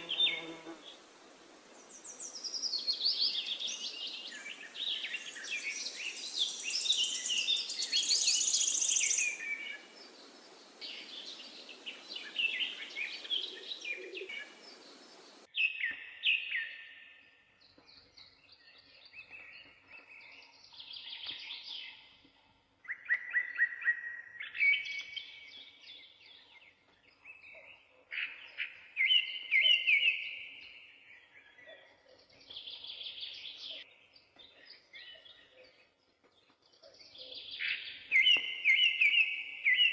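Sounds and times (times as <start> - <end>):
background hiss: 0.0 - 15.5.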